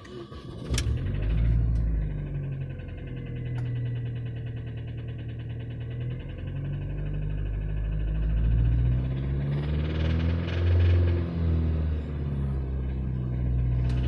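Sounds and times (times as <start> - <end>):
car engine running: 0.0 - 14.0
fast rattling engine tick: 0.3 - 14.0.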